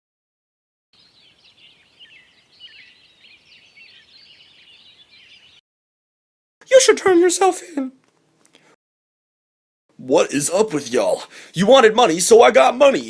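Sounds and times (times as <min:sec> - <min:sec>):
outdoor background hiss: 0:01.0 - 0:05.6
small birds chirping: 0:01.0 - 0:05.6.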